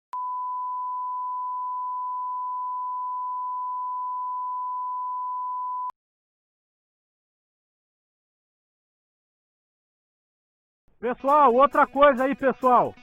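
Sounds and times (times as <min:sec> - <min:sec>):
steady electronic beep tone: 0:00.2 - 0:05.9.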